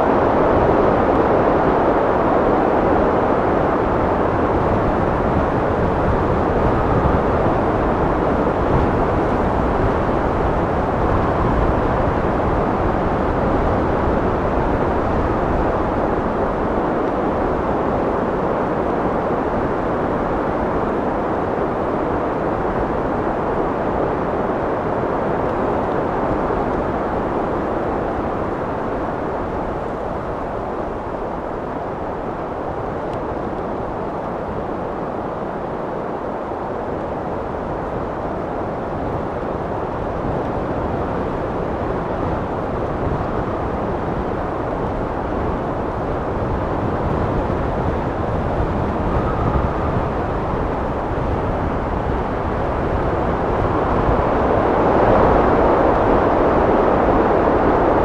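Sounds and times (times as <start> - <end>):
wind blowing: 0.0 - 58.0.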